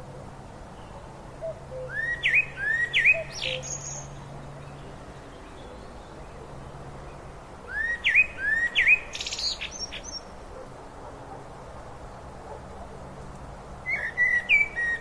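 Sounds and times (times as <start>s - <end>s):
songbird whistling and chipping: 1.8s - 4.1s, 7.7s - 10.3s, 13.9s - 15.0s.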